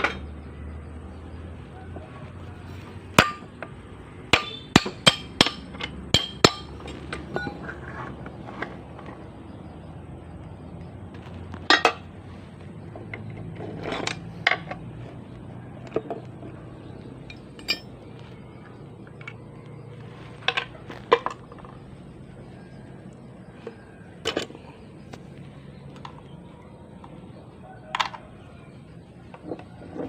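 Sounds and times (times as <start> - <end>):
metal tools and parts clinking: 4.3 - 9.2, 11.6 - 12.2, 12.9 - 15.2, 17.2 - 21.8, 23.6 - 24.6.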